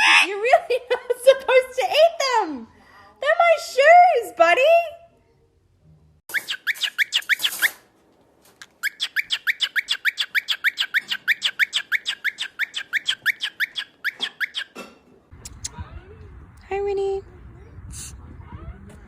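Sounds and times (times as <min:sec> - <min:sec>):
bird chirping rapidly: 0:06.3 - 0:07.8, 0:08.8 - 0:14.8.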